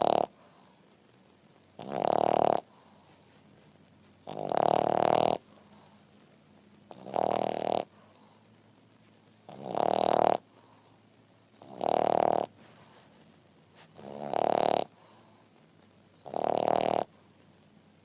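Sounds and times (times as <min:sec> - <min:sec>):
dog snoring: 0:00.0 - 0:00.3, 0:01.8 - 0:02.7, 0:04.2 - 0:05.5, 0:06.9 - 0:07.9, 0:09.5 - 0:10.4, 0:11.6 - 0:12.5, 0:13.8 - 0:15.2, 0:16.2 - 0:17.1.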